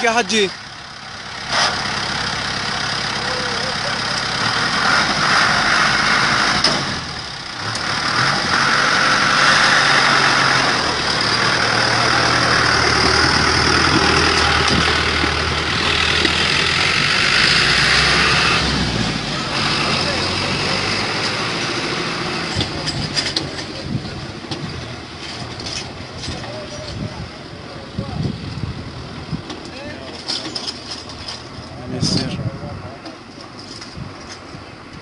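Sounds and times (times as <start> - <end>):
vehicle engine idling: 0.0 - 35.0.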